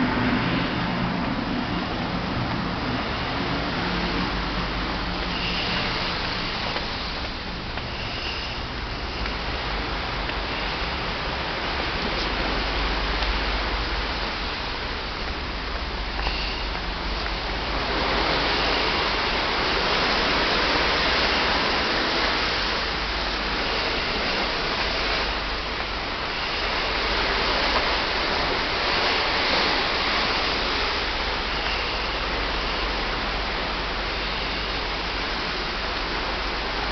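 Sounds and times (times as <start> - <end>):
low rumble: 0.0 - 28.9
wind and sea rushing: 0.0 - 36.9.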